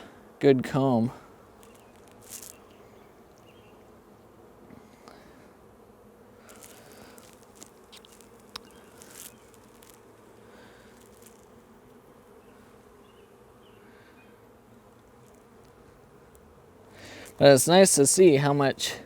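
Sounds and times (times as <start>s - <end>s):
bees buzzing: 0.0s - 19.0s.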